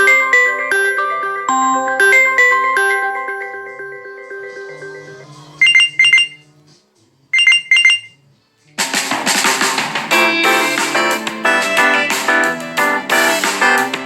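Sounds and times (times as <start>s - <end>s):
chiming melody ringtone: 0.0s - 6.4s, 7.4s - 8.2s
electronic beep ringtone: 0.0s - 6.4s, 7.3s - 8.2s
music ringtone: 0.0s - 6.4s, 7.3s - 8.2s, 10.1s - 14.0s.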